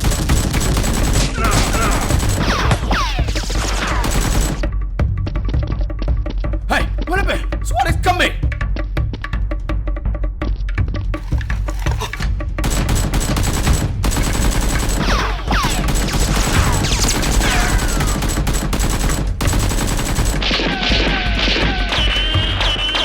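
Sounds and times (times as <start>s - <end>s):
automatic gunfire: 0.0s - 4.7s, 12.1s - 22.1s
falling whistling tones: 21.8s - 23.0s.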